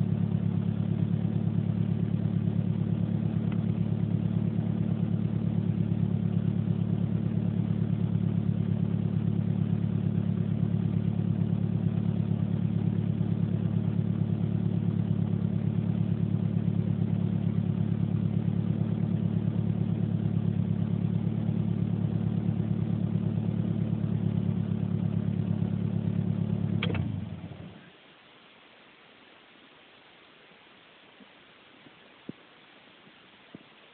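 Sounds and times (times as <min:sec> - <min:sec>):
engine idling with rapid pulsing: 0:00.0 - 0:27.9
click: 0:26.8 - 0:27.1.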